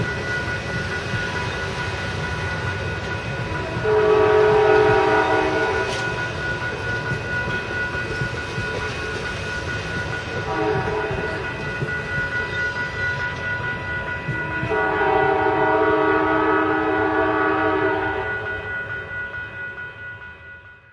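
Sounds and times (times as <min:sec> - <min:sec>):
passing train rumble: 0:00.0 - 0:20.9
train air horn blasts: 0:03.6 - 0:06.4, 0:10.5 - 0:11.4, 0:14.6 - 0:18.6.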